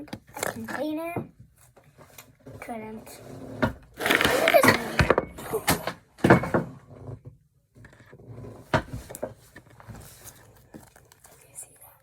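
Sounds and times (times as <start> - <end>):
knocks and clatters of handling: 3.6 - 11.6.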